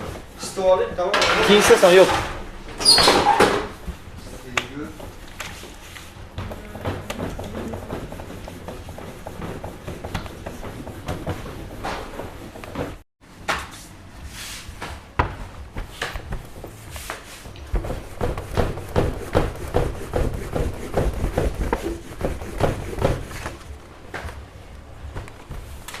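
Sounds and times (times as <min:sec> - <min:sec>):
hard objects knocking on wood: 0:06.3 - 0:13.0.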